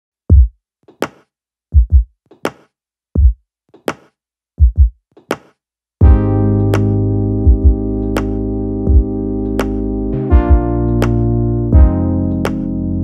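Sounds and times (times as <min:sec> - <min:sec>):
drum machine beat: 0:00.3 - 0:02.6, 0:03.2 - 0:04.0, 0:04.6 - 0:11.2, 0:11.8 - 0:12.7
synthesizer chord: 0:06.0 - 0:13.0.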